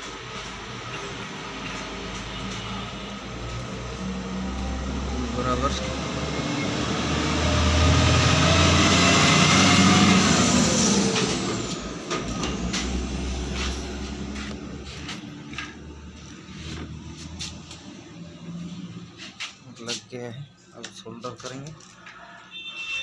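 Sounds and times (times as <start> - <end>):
large vehicle passing: 1.1 - 19.4.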